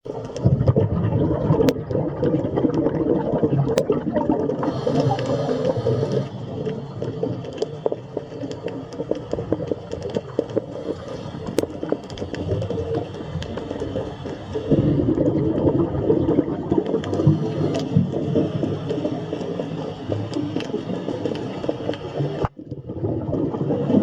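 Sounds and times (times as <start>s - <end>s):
low underwater rumble: 0.1s - 24.0s
small underwater clicks: 0.1s - 24.0s.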